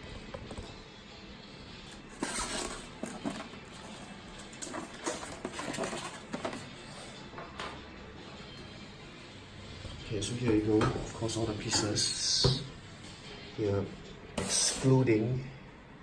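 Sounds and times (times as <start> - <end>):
plastic packaging rustling: 2.0 - 6.8.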